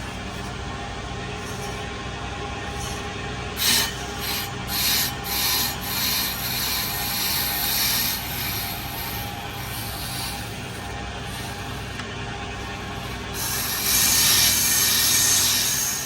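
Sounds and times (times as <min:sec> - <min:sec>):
blade scraping metal disc: 0:00.0 - 0:16.0
lathe motor running: 0:00.0 - 0:16.0.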